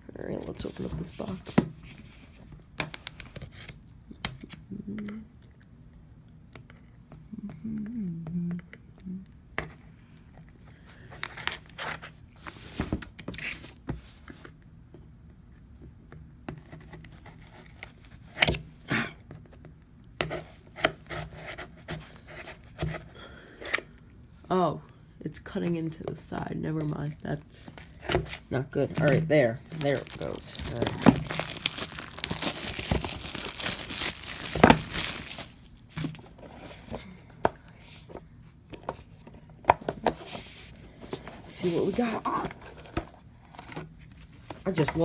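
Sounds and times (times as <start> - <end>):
cardboard rustling and clicks: 27.7 - 36.4.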